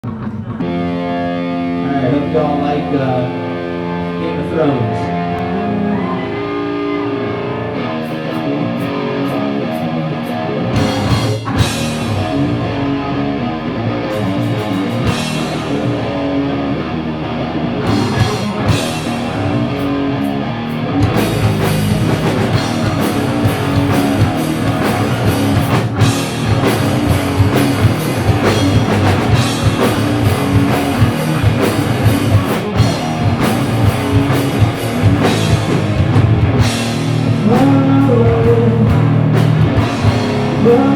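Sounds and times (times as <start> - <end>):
distorted electric guitar riffing: 0.0 - 40.9
drum and cymbal hits: 21.0 - 37.7.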